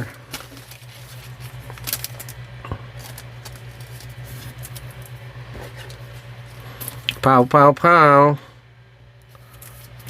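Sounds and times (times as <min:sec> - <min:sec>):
low electrical hum: 0:00.0 - 0:10.0
trading cards clicking and rustling: 0:00.3 - 0:06.2.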